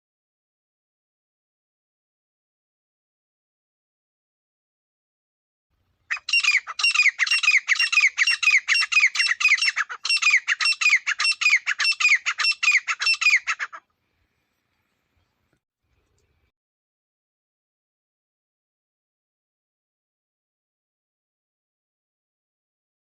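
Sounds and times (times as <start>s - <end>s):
partridge calling: 6.1s - 13.8s.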